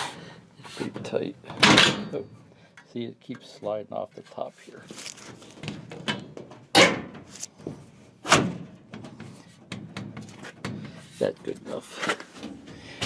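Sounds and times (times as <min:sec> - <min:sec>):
metal cover banging: 0:05.8 - 0:07.3.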